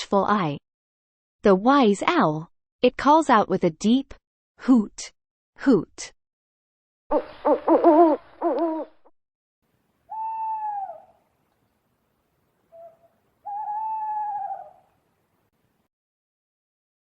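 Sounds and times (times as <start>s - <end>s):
owl hooting: 7.4s - 8.9s, 10.1s - 11.2s, 12.7s - 14.9s.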